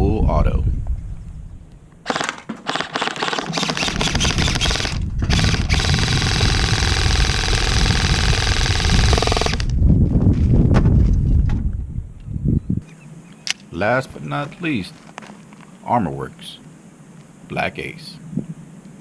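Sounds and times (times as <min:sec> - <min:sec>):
electric airsoft gun firing: 0:02.0 - 0:09.7.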